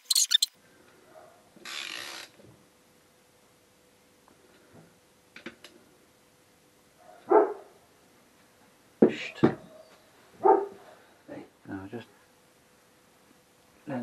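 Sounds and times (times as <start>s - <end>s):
dog barking: 7.0s - 7.8s, 9.3s - 11.0s.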